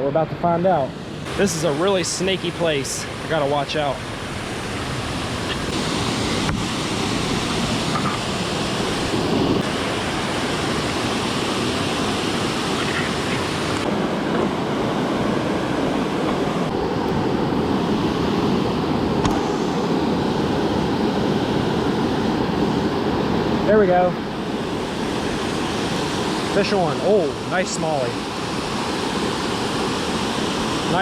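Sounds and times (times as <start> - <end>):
river water rushing over falls: 0.9 - 31.0.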